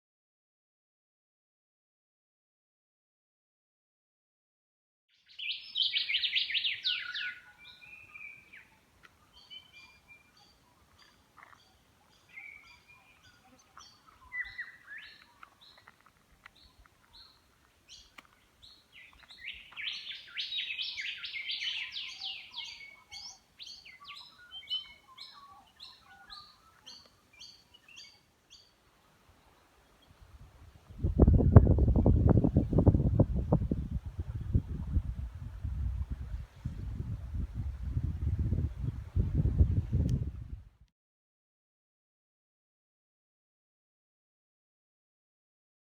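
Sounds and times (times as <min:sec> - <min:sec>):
songbirds chirping: 0:05.2 - 0:40.6.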